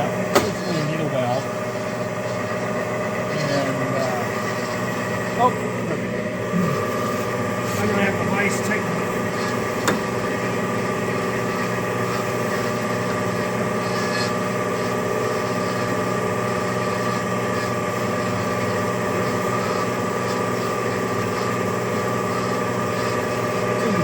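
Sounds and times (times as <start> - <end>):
band saw motor hum: 0.0 - 24.0.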